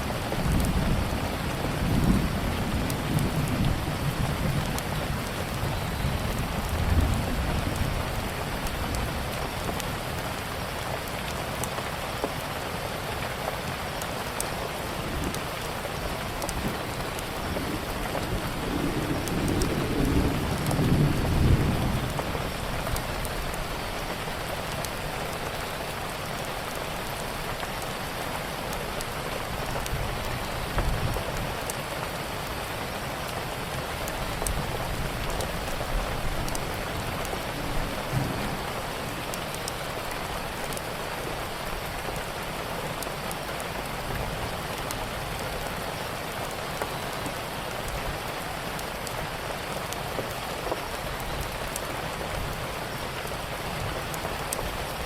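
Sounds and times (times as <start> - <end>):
steady rainfall: 0.0 - 55.0
low rumble of thunder: 0.3 - 9.4, 15.0 - 23.9, 34.2 - 40.8.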